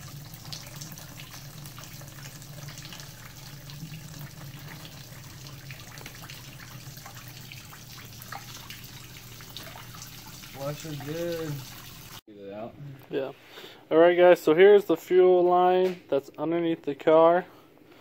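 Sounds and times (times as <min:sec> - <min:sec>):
fuel streaming and spattering: 0:00.0 - 0:12.2.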